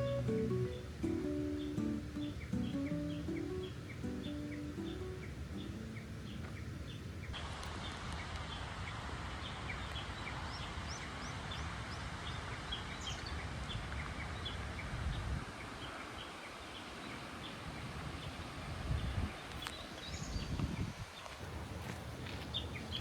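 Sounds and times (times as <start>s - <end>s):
guitar music: 0.0s - 6.6s
birds chirping: 0.0s - 7.4s, 15.6s - 23.0s
constant hiss: 0.0s - 23.0s.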